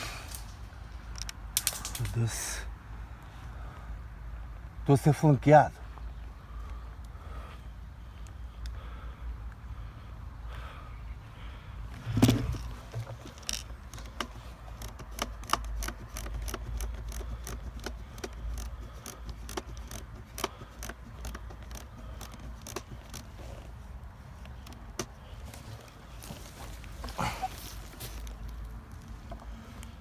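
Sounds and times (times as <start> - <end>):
sharp irregular clicks and snaps: 0.3 - 2.4, 8.2 - 8.8, 12.6 - 23.4, 24.4 - 25.2.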